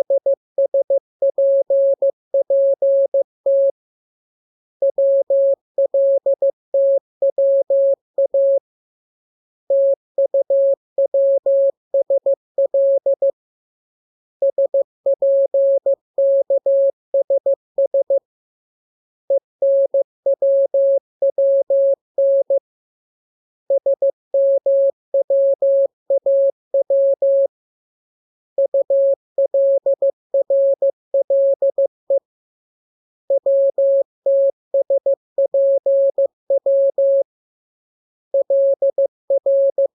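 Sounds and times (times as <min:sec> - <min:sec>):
morse code beeps: 0:00.0 - 0:03.7, 0:33.4 - 0:37.2, 0:38.4 - 0:39.9.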